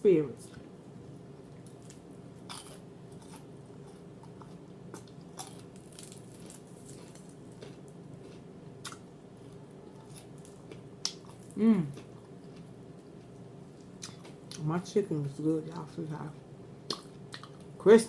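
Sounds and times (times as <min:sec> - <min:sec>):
steady low hum: 0:00.0 - 0:18.0
person chewing food: 0:01.2 - 0:14.6, 0:16.8 - 0:17.8.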